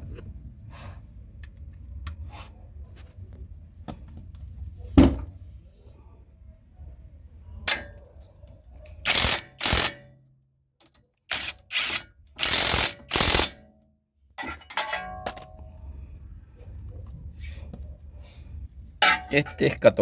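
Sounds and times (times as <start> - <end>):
ratchet wrench clicking: 9.1 - 10.0, 11.3 - 13.6.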